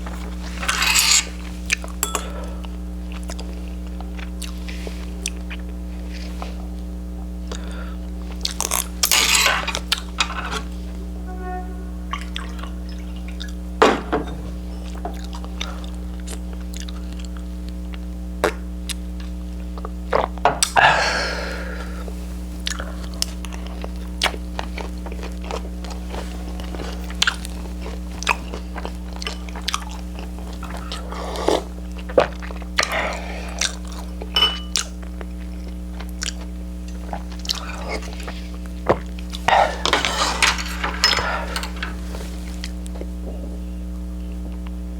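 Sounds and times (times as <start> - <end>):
electrical hum: 0.0 - 44.9
chewing and biting food: 2.6 - 10.2, 14.8 - 20.8, 22.6 - 39.9
utensils clicking against dishes: 39.5 - 42.2.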